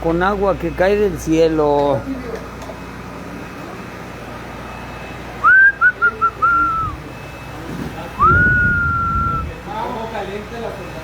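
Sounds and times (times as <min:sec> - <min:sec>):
person whistling: 0:05.4 - 0:07.0, 0:08.2 - 0:09.6
low rumble: 0:08.2 - 0:09.6.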